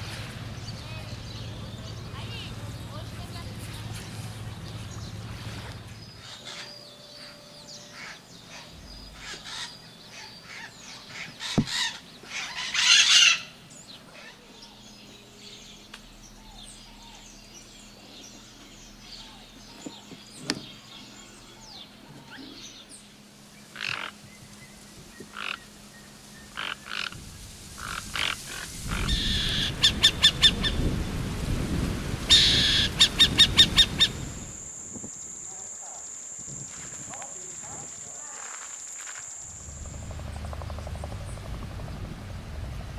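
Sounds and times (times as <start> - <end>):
birds chirping and calling: 0.4 - 31.0, 32.2 - 36.2, 37.1 - 42.2
low rumble: 8.7 - 9.8, 39.5 - 42.9.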